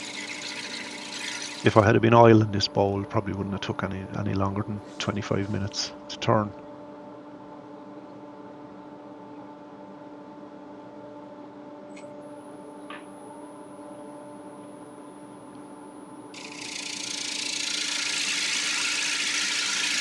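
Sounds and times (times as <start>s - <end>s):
lathe motor humming: 0.0s - 2.0s, 16.4s - 20.0s.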